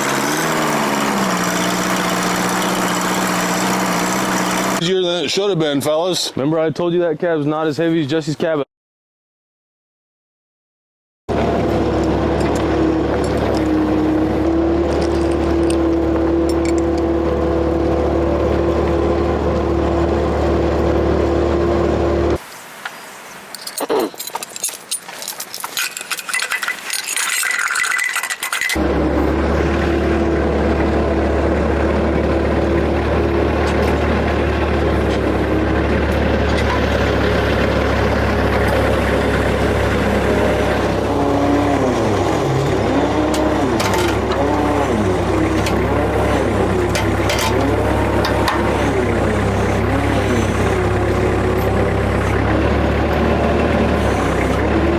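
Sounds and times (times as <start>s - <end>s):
vehicle engine running steadily: 0.0s - 4.8s, 11.3s - 22.4s, 28.8s - 54.9s
clicking and knocking: 43.2s - 44.6s.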